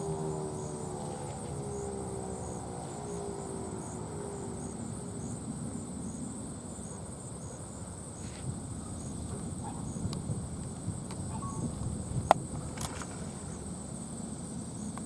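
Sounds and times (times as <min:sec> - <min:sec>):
insects trilling and chirping: 0:00.0 - 0:15.0
low background rumble: 0:08.4 - 0:14.0.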